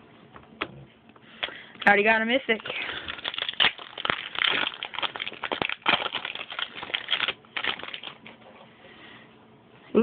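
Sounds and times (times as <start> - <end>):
foil wrapper crinkling: 1.4 - 8.4
cards flipping: 3.1 - 8.4.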